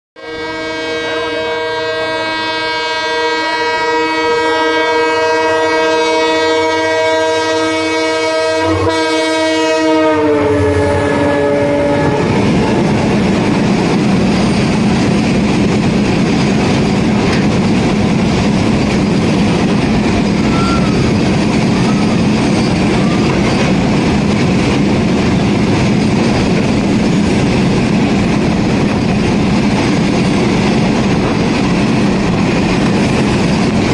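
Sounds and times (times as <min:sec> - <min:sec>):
locomotive air horn: 0:00.2 - 0:13.1, 0:20.4 - 0:21.2
freight wagons rumbling past: 0:10.6 - 0:33.9.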